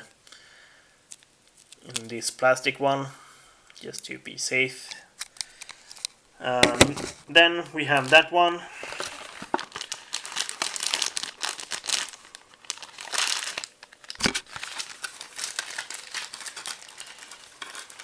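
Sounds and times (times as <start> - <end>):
packaging crinkling and rustling: 7.9 - 18.0.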